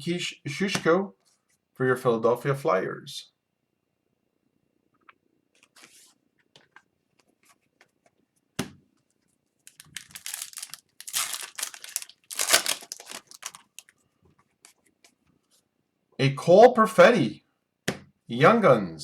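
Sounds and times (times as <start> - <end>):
card wrapper tearing and crinkling: 9.7 - 13.9.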